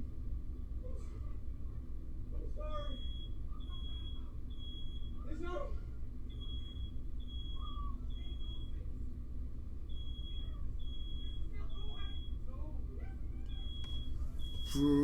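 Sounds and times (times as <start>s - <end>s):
smoke alarm beeping: 2.8s - 5.4s, 6.3s - 8.9s, 9.8s - 12.6s, 13.4s - 15.0s.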